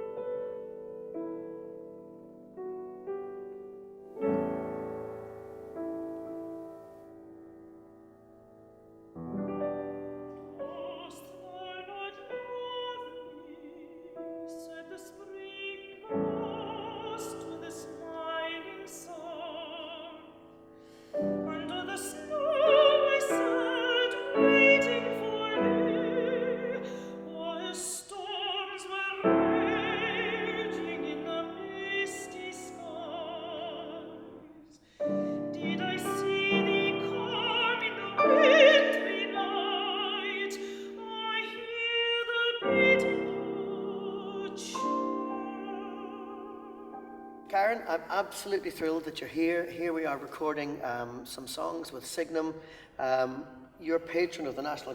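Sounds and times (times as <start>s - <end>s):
piano accompaniment: 0.0s - 52.2s
woman singing with vibrato: 10.6s - 20.4s, 21.2s - 47.8s.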